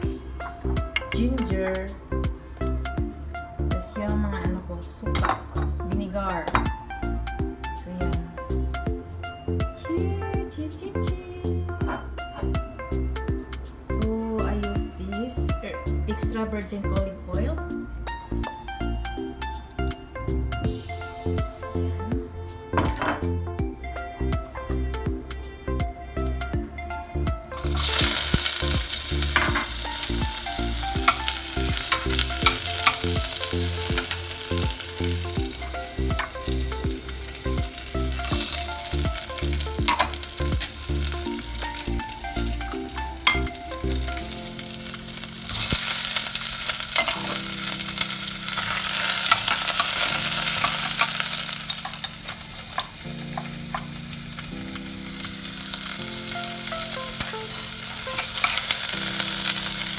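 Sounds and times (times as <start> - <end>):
food sizzling in oil: 27.6 - 59.9.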